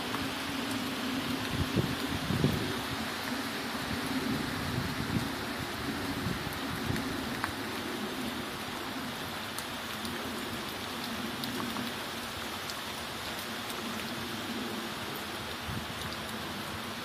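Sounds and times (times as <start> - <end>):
raindrops ticking: 0.0 - 4.2, 6.4 - 17.0
steady rain falling: 0.0 - 17.0.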